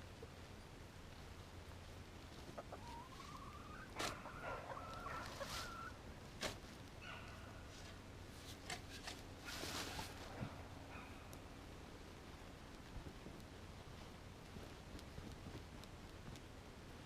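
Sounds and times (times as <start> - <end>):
chicken calling: 2.5 - 6.0.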